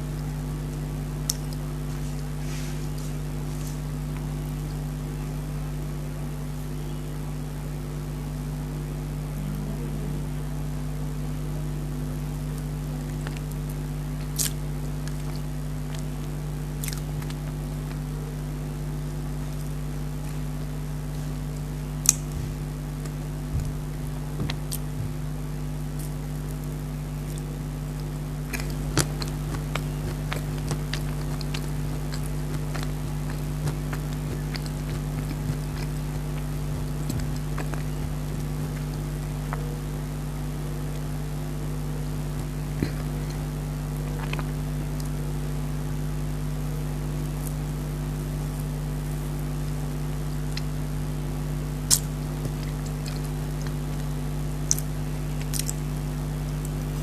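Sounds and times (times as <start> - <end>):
low electrical hum: 0.0 - 57.0
soft eating clicks and smacks: 0.1 - 5.1, 12.2 - 18.1, 19.0 - 41.1, 42.2 - 45.2, 50.4 - 50.8, 51.8 - 57.0.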